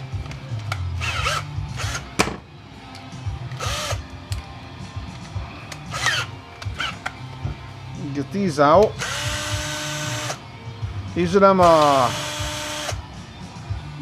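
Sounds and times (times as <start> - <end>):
background music: 0.0 - 14.0
power driver whining: 0.2 - 4.5, 5.2 - 7.7, 8.6 - 10.6, 11.4 - 13.2.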